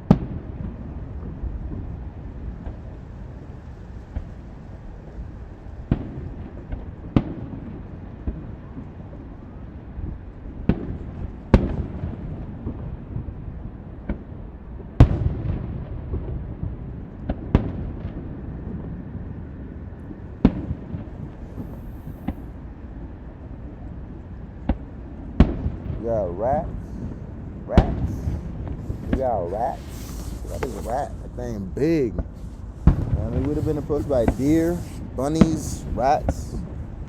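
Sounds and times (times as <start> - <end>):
firework shell bursts: 27.8 - 37.0.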